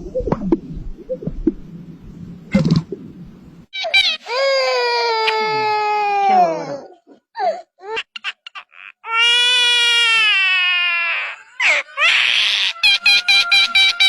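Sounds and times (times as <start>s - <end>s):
bird wailing cry: 11.4s - 14.0s
bird harsh squawk: 12.0s - 14.0s.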